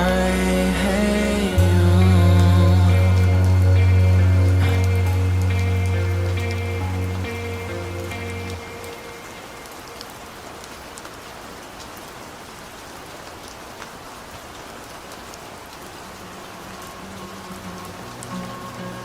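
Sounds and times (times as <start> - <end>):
faint low music notes: 0.0 - 9.2
raindrop ticks: 0.0 - 19.0
steady rain: 0.0 - 19.0.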